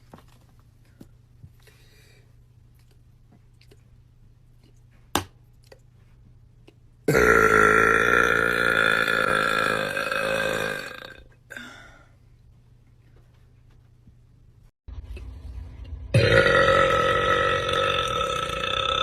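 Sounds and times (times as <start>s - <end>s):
person burping loudly: 7.1s - 11.8s, 16.2s - 19.0s.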